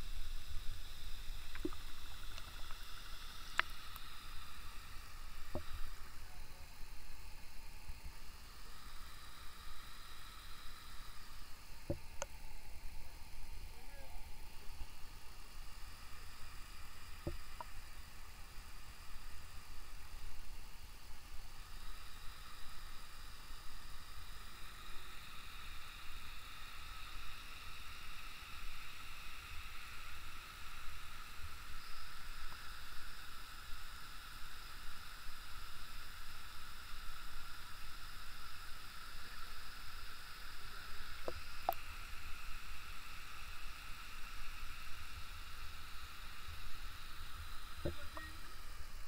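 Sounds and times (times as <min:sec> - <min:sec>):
faint clicks: 0:01.4 - 0:04.1, 0:41.1 - 0:41.8
high-pitched drone: 0:47.8 - 0:48.7.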